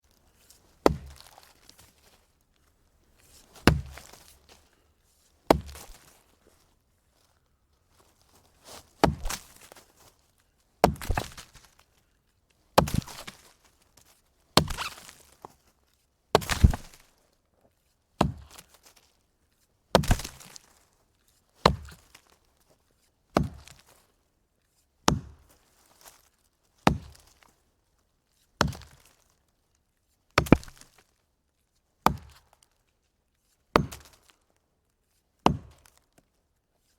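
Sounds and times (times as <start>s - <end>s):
axe chopping log: 0.8s - 1.4s, 3.6s - 4.3s, 5.5s - 6.1s, 9.0s - 9.7s, 10.8s - 11.5s, 12.8s - 13.4s, 14.6s - 15.1s, 16.4s - 17.0s, 18.2s - 18.7s, 20.0s - 20.6s, 21.6s - 22.1s, 23.4s - 23.8s, 25.1s - 25.4s, 26.9s - 27.2s, 28.6s - 29.1s, 30.4s - 30.9s, 32.0s - 32.4s, 33.8s - 34.3s, 35.4s - 36.0s.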